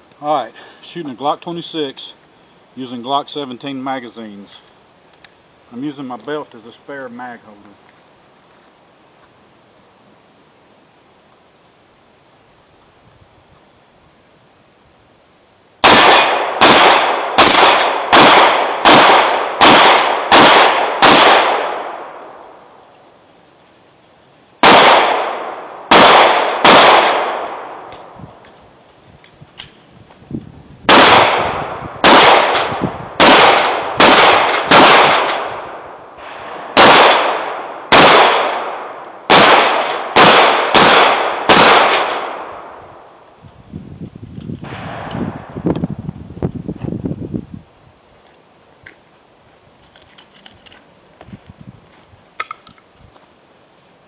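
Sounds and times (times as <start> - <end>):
pistol shots: 15.8 - 22.5, 24.6 - 28.2, 30.9 - 42.8.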